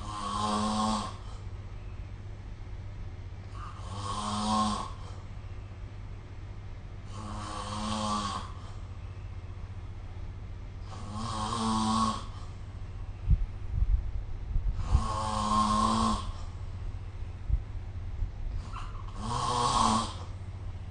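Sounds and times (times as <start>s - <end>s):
person snoring: 0.0s - 1.4s, 3.5s - 5.2s, 7.1s - 8.8s, 10.8s - 12.5s, 14.7s - 16.6s, 18.6s - 20.4s.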